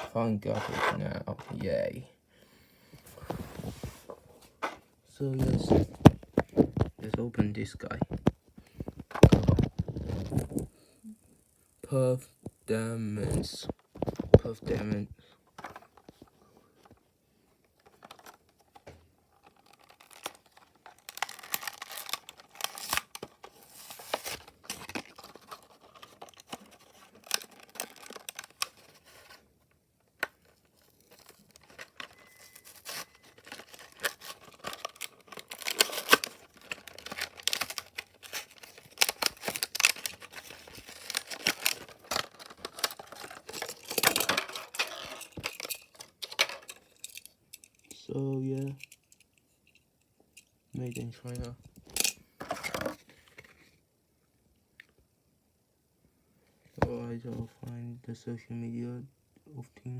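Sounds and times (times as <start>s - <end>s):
packaging tearing and crinkling: 19.3s - 29.4s, 30.4s - 47.2s.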